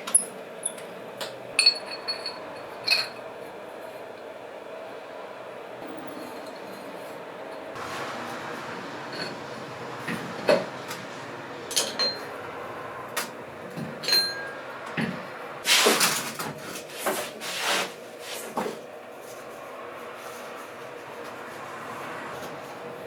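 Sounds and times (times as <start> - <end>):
scraping knocks: 7.8 - 17.3.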